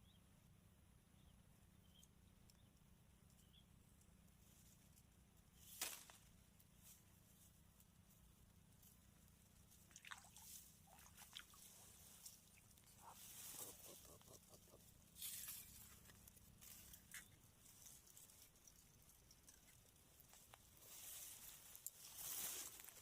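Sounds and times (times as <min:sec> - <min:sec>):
soft rustles and clicks: 0:10.4 - 0:23.0.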